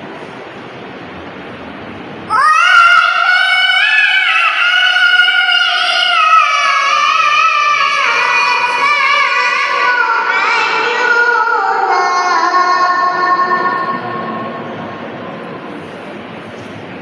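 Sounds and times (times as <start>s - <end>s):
girl reciting melodically: 2.3s - 15.8s.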